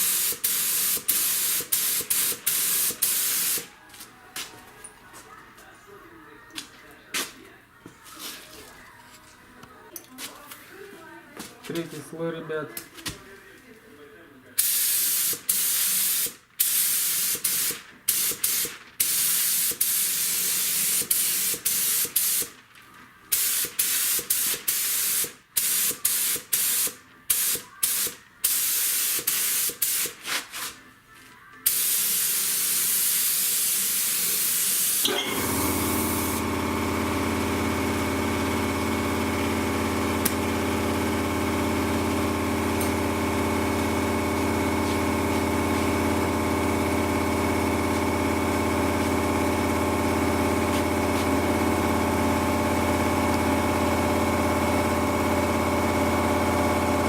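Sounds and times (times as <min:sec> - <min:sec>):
paint spray gun hissing: 0:00.0 - 0:03.7, 0:14.6 - 0:22.6, 0:23.3 - 0:30.2, 0:31.7 - 0:36.7.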